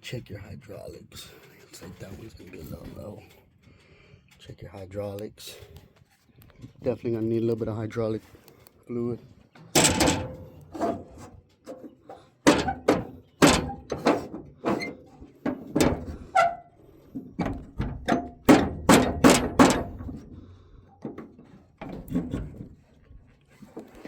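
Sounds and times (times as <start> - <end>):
heavy thunks: 9.7 - 11.3, 12.4 - 22.8
metallic clanks: 9.7 - 16.6, 17.2 - 22.6.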